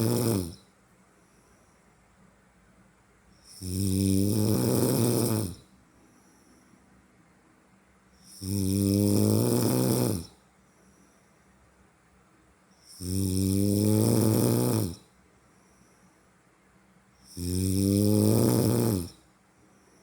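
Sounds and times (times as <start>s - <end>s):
person snoring: 0.0s - 0.6s, 3.5s - 5.7s, 8.3s - 10.4s, 13.0s - 15.0s, 17.3s - 19.2s.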